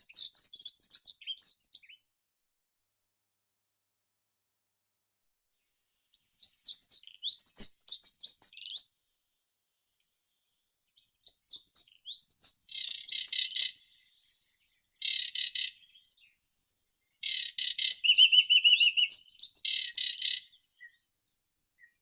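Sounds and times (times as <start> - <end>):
songbirds chirping: 0.1 - 2.0, 5.6 - 22.0
quick pitched bird trill: 17.2 - 20.9.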